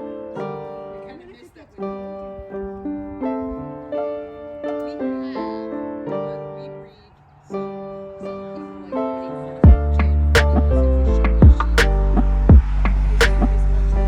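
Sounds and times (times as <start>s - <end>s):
gentle keyboard melody: 0.0s - 14.0s.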